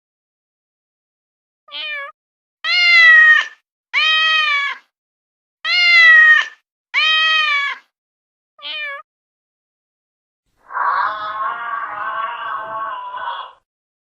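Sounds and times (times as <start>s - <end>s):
cat meowing: 1.7s - 4.8s, 5.7s - 7.9s, 8.6s - 9.0s, 10.7s - 13.6s.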